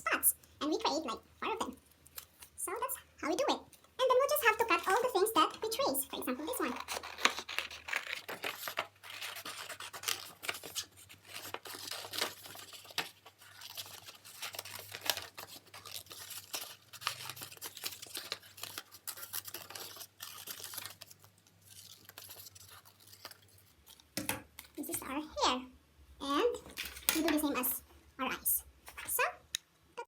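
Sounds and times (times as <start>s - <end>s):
paper rustling: 6.4s - 25.0s.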